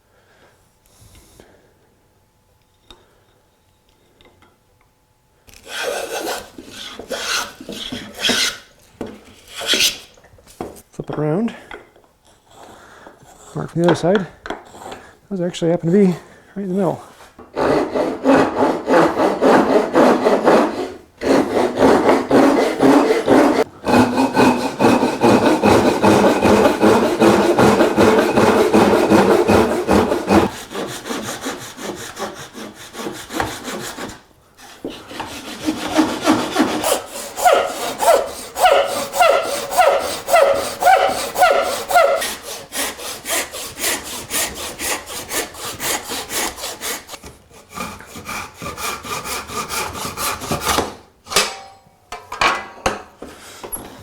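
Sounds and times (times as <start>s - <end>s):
hand saw cutting wood: 5.6s - 8.7s, 9.4s - 10.1s, 17.4s - 51.4s
saw blade ringing: 51.3s - 52.1s.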